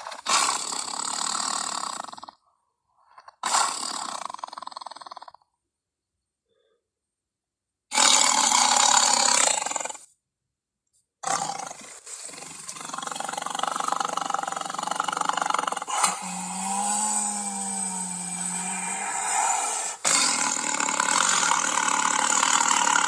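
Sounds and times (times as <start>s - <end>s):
dinosaur roar: 11.2s - 23.0s.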